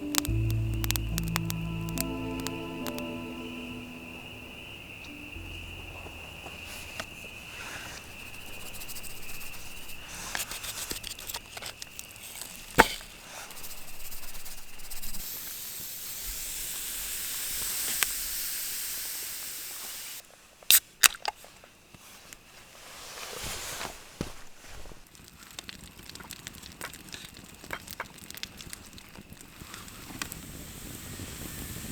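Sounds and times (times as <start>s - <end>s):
fire popping and crackling: 0.0s - 4.1s, 5.1s - 18.4s, 24.4s - 31.9s
campfire hissing: 0.0s - 20.2s, 24.4s - 31.9s.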